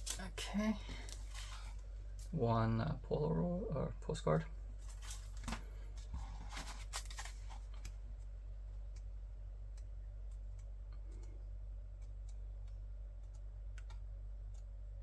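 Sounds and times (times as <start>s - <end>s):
steady low hum: 0.0s - 15.0s
cards and packaging clicking: 6.5s - 8.0s.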